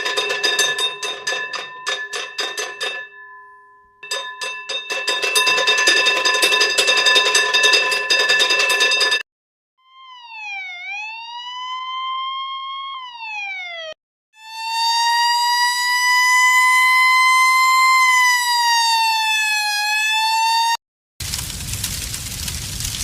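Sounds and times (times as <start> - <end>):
siren-like alarm wail: 9.8 - 20.8.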